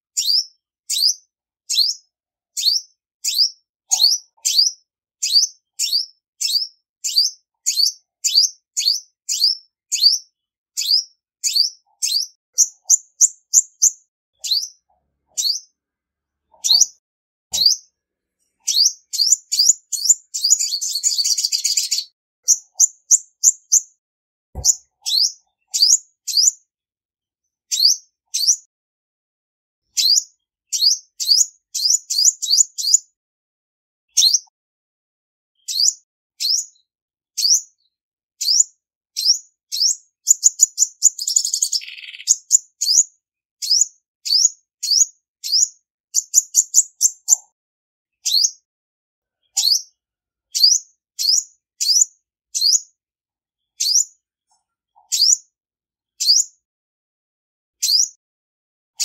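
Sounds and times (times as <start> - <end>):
buzzy bird trill: 2.6 - 10.2, 10.8 - 15.8, 16.6 - 17.9, 18.6 - 23.9, 24.6 - 26.6, 27.7 - 28.7, 30.0 - 33.0, 34.2 - 34.5, 39.2 - 43.0, 49.5 - 52.9, 53.7 - 54.1, 55.0 - 55.5, 57.8 - 58.2
sunbird chipping calls: 24.6 - 26.5.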